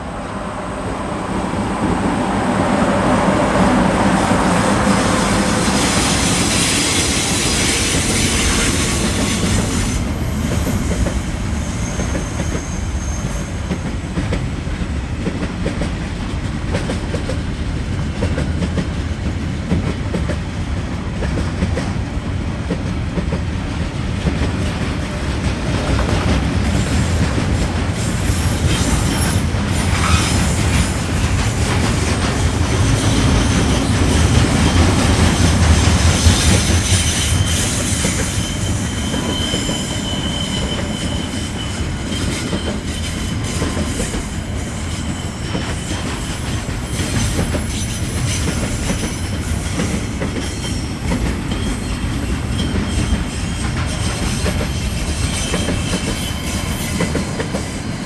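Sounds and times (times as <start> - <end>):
train wheels rumbling on rails: 0.0 - 58.0
wheel squeals: 4.8 - 15.0, 26.7 - 58.0.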